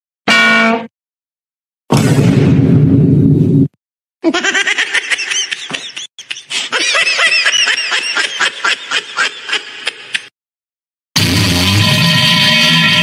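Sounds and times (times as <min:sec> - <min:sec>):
loud blast: 0:01.9 - 0:03.7
high-pitched giggling laugh: 0:04.2 - 0:10.3.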